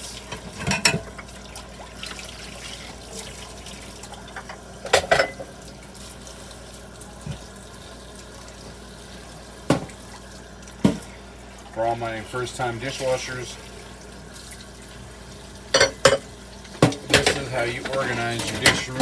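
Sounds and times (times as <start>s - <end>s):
water running from tap into sink: 0.0s - 19.0s
plates knocking together: 16.8s - 19.0s.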